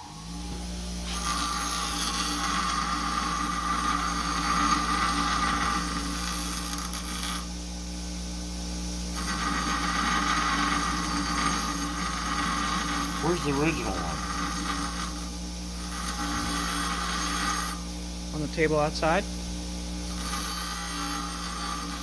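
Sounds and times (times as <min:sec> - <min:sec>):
welding machine hum: 0:00.2 - 0:07.8, 0:09.0 - 0:18.5, 0:19.9 - 0:22.0
welding arc crackling: 0:09.3 - 0:17.8.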